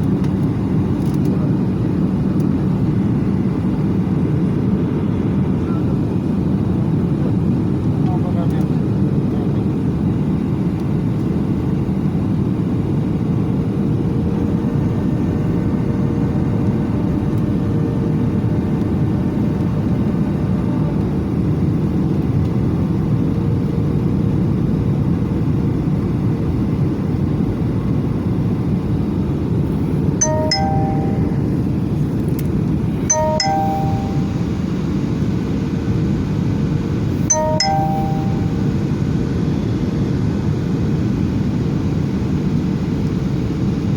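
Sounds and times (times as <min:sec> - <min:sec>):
two-tone cabin chime: 0:30.2 - 0:32.0, 0:33.1 - 0:34.8, 0:37.2 - 0:39.0.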